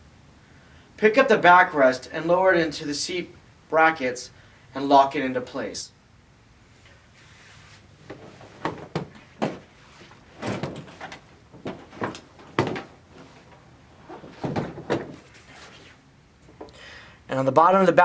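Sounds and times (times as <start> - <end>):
knocks and clunks of chair parts: 8.0 - 16.7.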